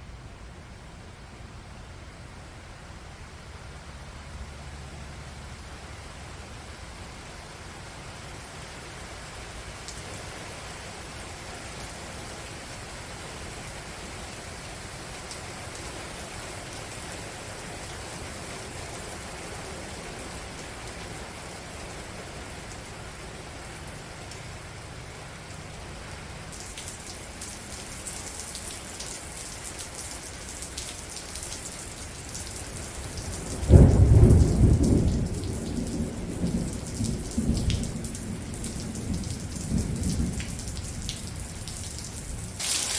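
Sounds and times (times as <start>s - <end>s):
rain falling: 0.2s - 42.9s
thunderclap rumbling: 33.4s - 41.0s.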